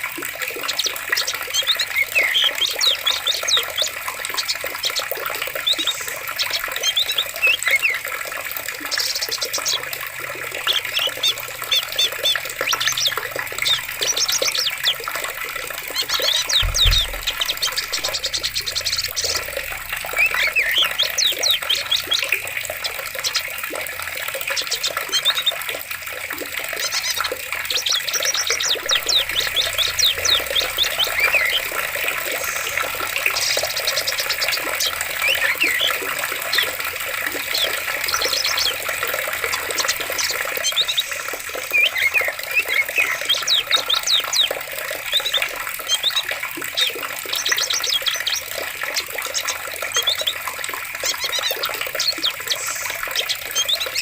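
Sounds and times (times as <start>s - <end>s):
running water rushing: 0.0s - 54.0s
birds chirping trills: 0.5s - 23.7s, 26.7s - 54.0s
low thump: 16.5s - 19.6s.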